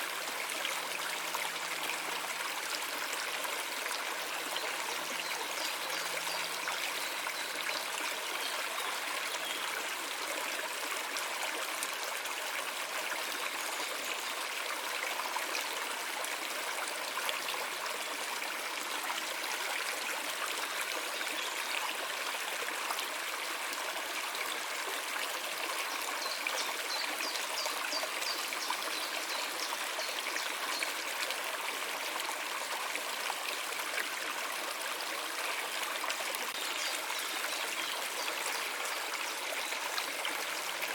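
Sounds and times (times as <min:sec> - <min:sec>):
stream water flowing: 0:00.0 - 0:40.9.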